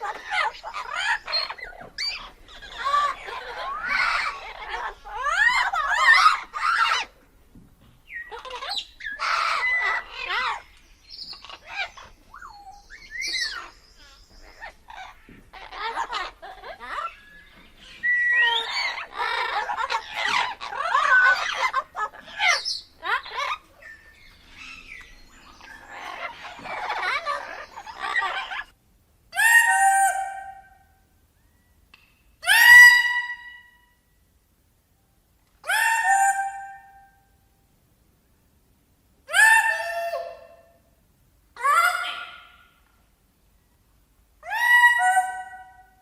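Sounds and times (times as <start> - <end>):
parrot squawking and chattering: 0.0 - 7.2, 8.1 - 30.8, 41.6 - 42.9.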